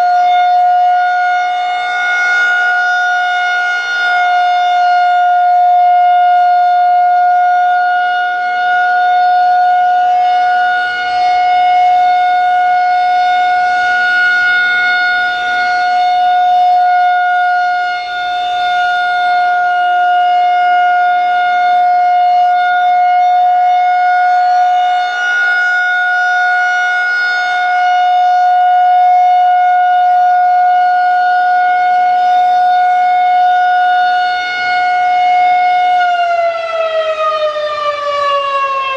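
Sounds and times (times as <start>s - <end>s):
warning siren alert tone: 0.0s - 38.9s.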